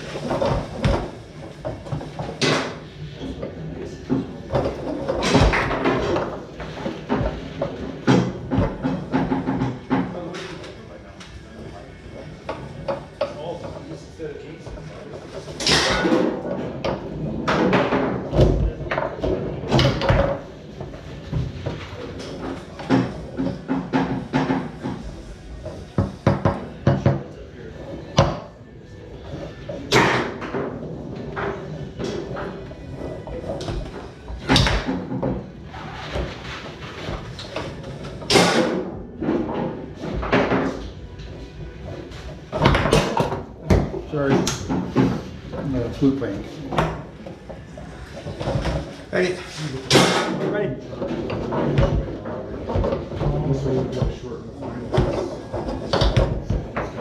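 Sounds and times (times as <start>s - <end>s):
foosball rods banging: 0.0s - 10.7s, 12.2s - 13.8s, 14.6s - 28.5s, 29.3s - 57.0s
foosball ball cracking off walls: 4.1s - 10.1s, 29.8s - 32.5s, 33.6s - 41.0s, 42.5s - 45.3s.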